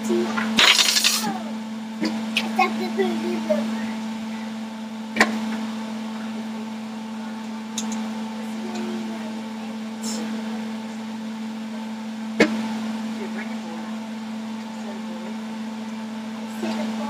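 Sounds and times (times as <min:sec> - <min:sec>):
electric appliance hum: 0:00.0 - 0:17.0.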